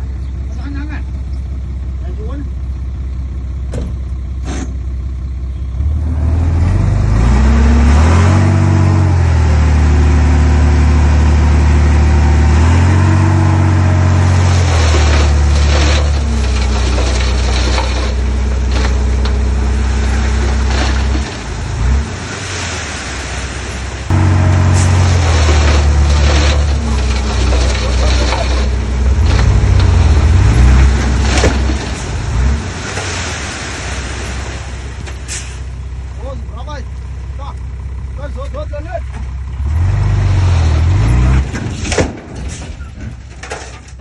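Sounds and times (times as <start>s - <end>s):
heavy diesel engine revving: 5.6s - 36.1s, 39.4s - 41.8s.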